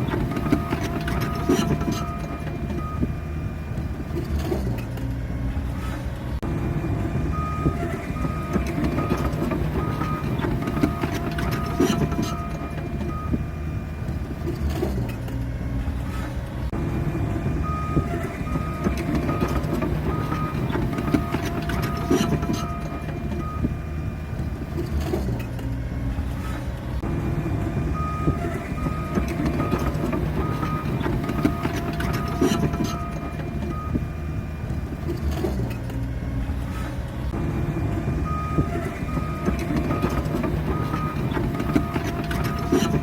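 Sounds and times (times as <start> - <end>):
reversing alarm beeps: 0.0 - 4.7, 7.2 - 15.0, 17.4 - 25.3, 27.0 - 35.1, 38.1 - 43.0
bulldozer diesel engine running: 0.0 - 43.0.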